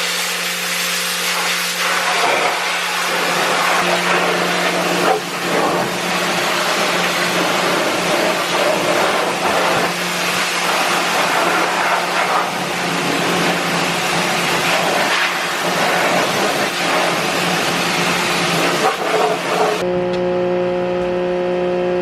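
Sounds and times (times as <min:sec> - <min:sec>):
pressure washer water spraying: 0:00.0 - 0:19.8
pressure washer motor hum: 0:00.0 - 0:19.9.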